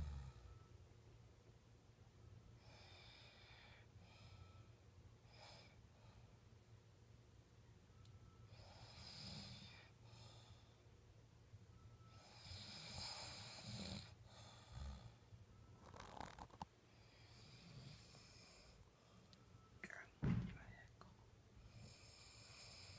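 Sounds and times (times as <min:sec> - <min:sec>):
person snoring softly: 0:00.0 - 0:00.7, 0:08.5 - 0:10.7, 0:12.0 - 0:15.3, 0:15.9 - 0:18.8, 0:21.6 - 0:22.9.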